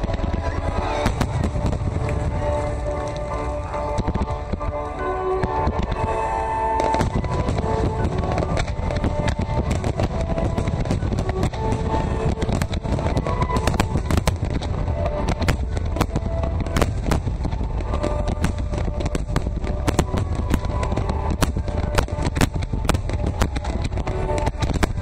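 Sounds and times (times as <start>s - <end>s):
fireworks bangs and crackles: 0.0s - 25.0s
low rumble: 0.0s - 25.0s
music playing: 0.0s - 25.0s.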